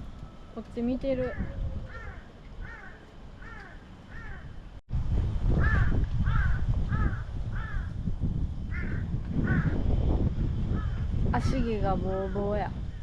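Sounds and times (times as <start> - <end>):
wind rumble on microphone: 0.0 - 13.0
crow cawing: 1.9 - 4.6, 5.6 - 7.9.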